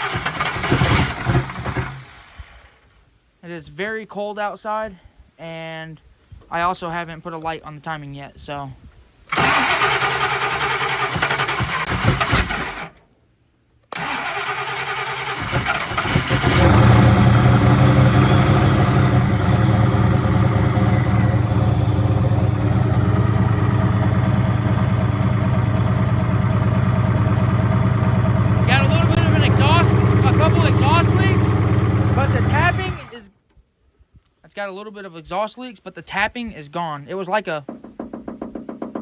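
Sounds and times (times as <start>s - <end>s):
engine starter cranking: 0.0s - 2.8s, 9.3s - 13.0s, 13.9s - 33.2s
engine idling: 0.0s - 2.9s, 14.0s - 33.2s.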